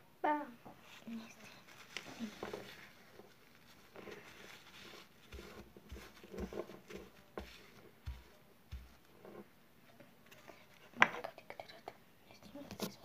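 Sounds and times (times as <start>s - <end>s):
slime being stirred: 0.9s - 9.5s.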